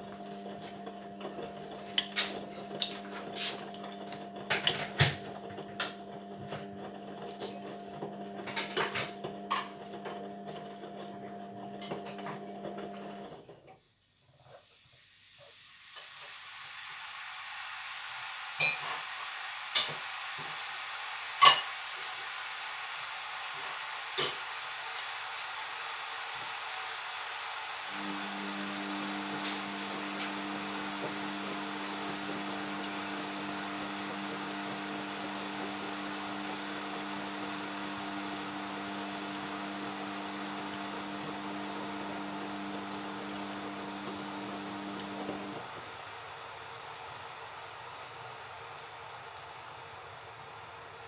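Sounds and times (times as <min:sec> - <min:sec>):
washing machine hiss: 0:13.3 - 0:51.0.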